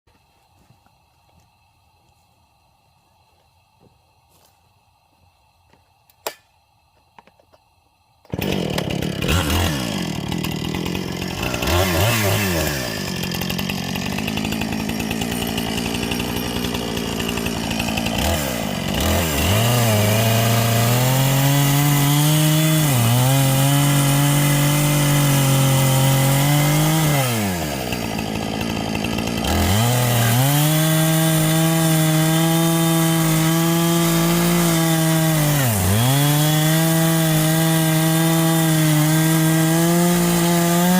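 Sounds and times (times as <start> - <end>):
chainsaw revving and cutting wood: 8.3 - 40.9.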